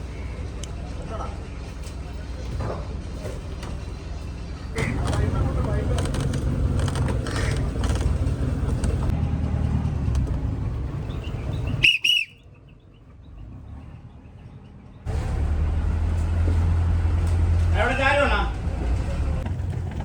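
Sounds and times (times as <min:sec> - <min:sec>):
vehicle rumble: 0:00.0 - 0:20.0
high whistling chirp: 0:11.0 - 0:12.9.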